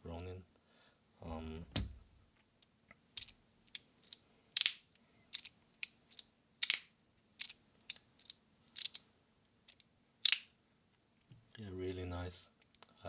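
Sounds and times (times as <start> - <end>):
fidget slider clicking: 3.2 - 4.8, 5.4 - 9.0, 9.7 - 10.4.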